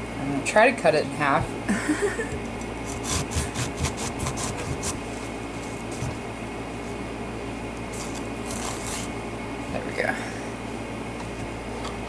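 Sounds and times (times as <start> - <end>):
steady low hum: 0.0 - 12.0
knife sawing through squash: 2.8 - 6.2, 7.9 - 9.2.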